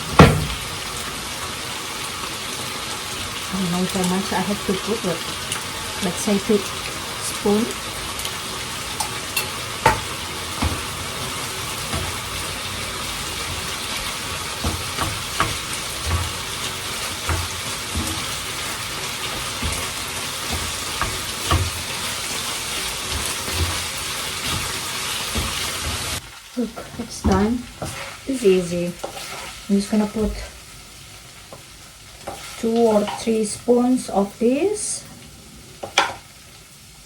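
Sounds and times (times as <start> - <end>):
food sizzling in a frying pan: 0.0 - 37.0
spoon knocking against pan: 9.0 - 10.9.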